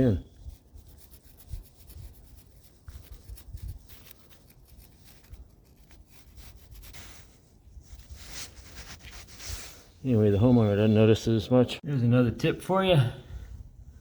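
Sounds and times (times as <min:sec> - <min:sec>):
marker scratching on metal: 0:00.0 - 0:09.7.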